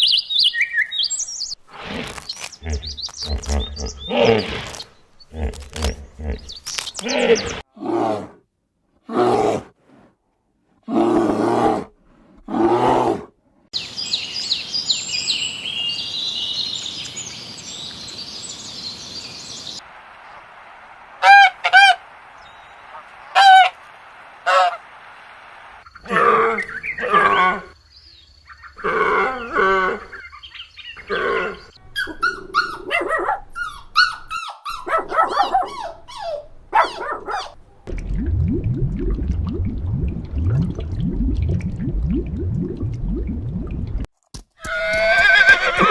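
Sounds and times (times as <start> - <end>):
high chirping bird calls: 0.0 - 1.6.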